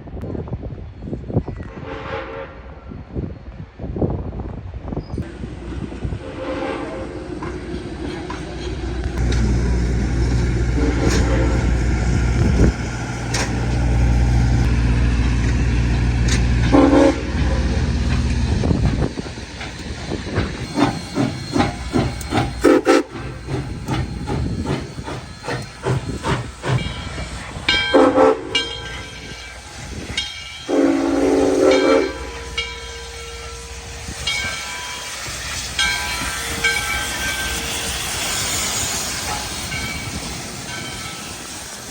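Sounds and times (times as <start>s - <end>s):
locomotive rumble: 5.2s - 41.9s
steam hiss: 5.2s - 41.9s
steam whistle blasts: 6.2s - 7.2s, 9.2s - 12.7s, 16.6s - 17.9s, 20.8s - 23.3s, 27.9s - 29.1s, 30.7s - 34.0s.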